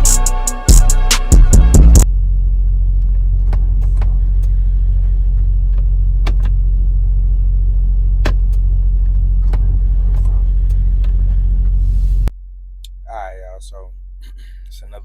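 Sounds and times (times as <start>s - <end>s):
engine idling low rumble: 1.4s - 15.0s.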